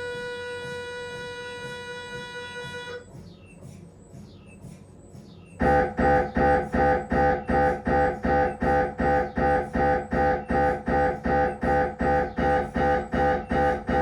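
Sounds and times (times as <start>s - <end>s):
mri scanner buzzing pulse: 5.6s - 14.0s.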